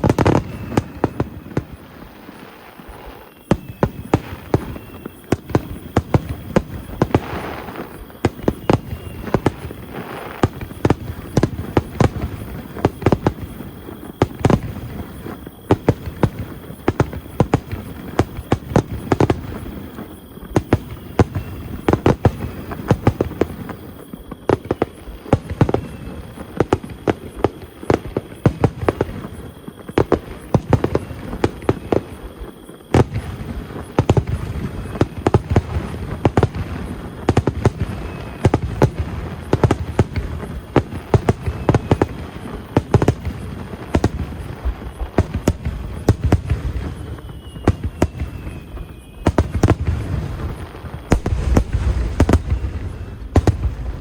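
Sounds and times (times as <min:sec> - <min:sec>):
fireworks bangs and crackles: 0:00.0 - 0:54.0.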